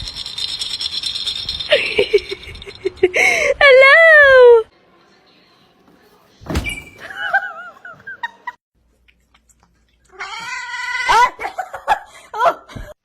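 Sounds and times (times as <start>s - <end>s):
cat yowling: 10.1s - 11.3s.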